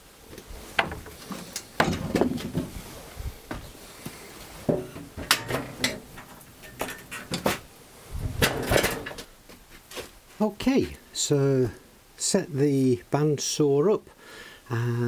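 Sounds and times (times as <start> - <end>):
workshop equipment knocks and rattles: 0.8 - 2.8, 4.6 - 9.3.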